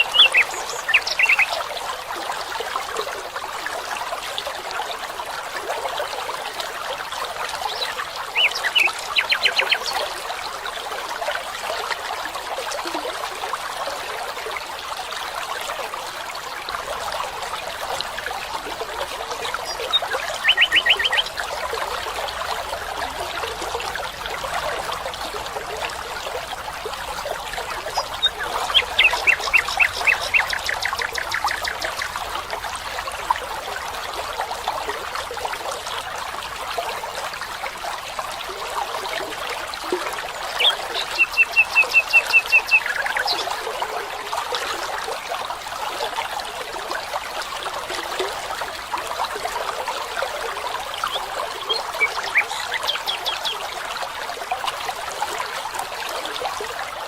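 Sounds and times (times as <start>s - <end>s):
stream trickling and splashing: 0.0s - 57.0s
bird trilling: 19.7s - 21.2s.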